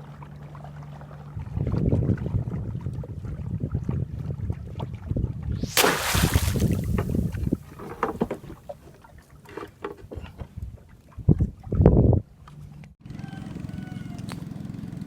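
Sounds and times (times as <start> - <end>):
loud splashing rush: 5.6 - 8.2
water sloshing around boat: 5.7 - 11.8.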